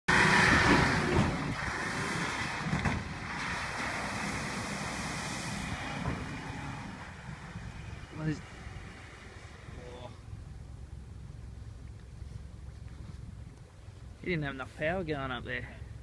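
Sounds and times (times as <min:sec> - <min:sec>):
wind buffeting microphone: 0:00.1 - 0:15.3
vehicle driving on sand: 0:00.1 - 0:16.0.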